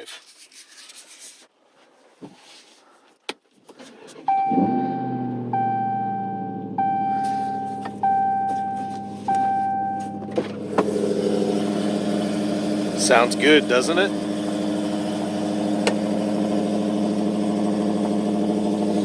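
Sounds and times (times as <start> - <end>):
car engine starting and idling: 3.8 - 19.0
warning chime dinging: 4.3 - 10.4.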